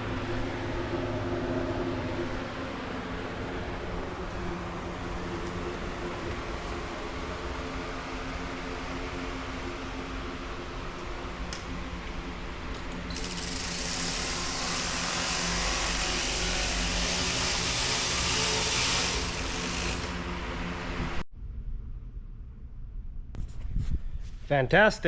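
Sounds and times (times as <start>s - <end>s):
workshop machinery humming: 0.0s - 21.2s.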